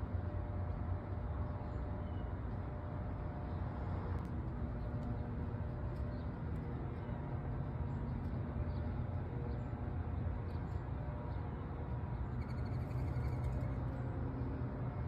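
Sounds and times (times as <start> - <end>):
steady low rumble: 0.0 - 12.8
faint bird chirps: 12.4 - 13.7.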